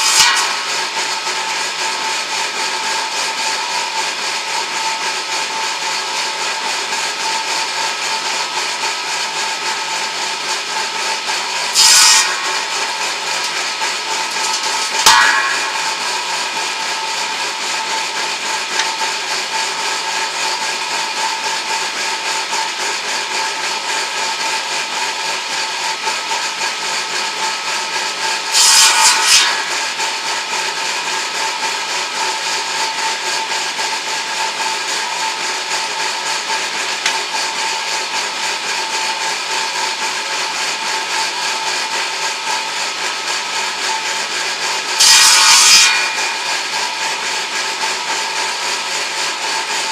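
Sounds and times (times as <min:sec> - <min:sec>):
circular saw blade whining: 0:00.0 - 0:49.9
sharp knock: 0:14.3 - 0:17.1.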